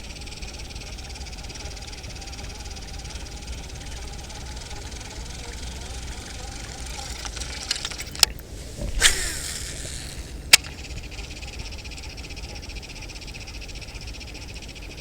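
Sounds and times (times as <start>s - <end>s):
chorus of frogs or insects: 0.0s - 15.0s
fishing reel swish and whir: 1.2s - 10.8s
sharp clicks: 3.9s - 10.8s.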